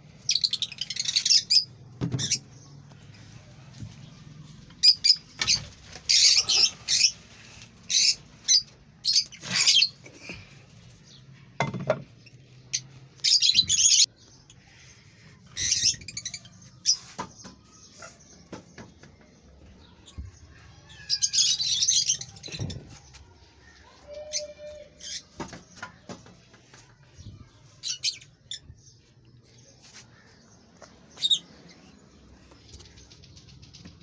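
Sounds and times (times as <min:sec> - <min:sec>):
parrots chirping shrilly: 0:04.8 - 0:07.2.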